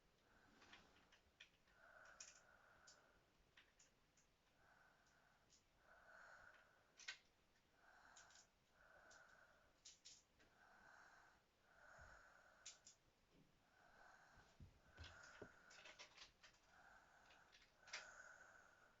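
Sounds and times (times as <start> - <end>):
soft wheezy snoring breaths: 0.0 - 19.0
faint clicks: 0.6 - 5.7, 12.6 - 13.0.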